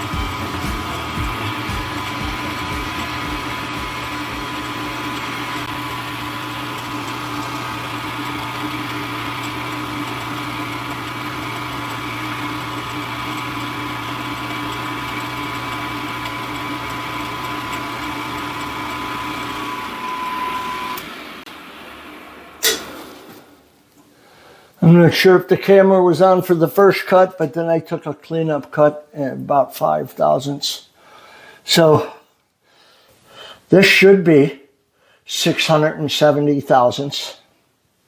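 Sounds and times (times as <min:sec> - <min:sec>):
milling machine spindle whine: 0:00.0 - 0:23.2.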